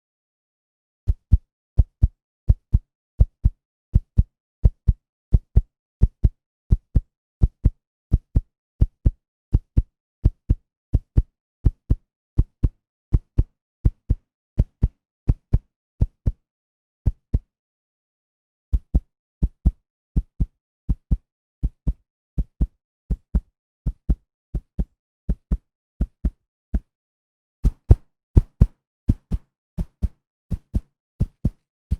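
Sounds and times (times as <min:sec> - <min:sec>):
heartbeat thumps: 0:27.6 - 0:31.6.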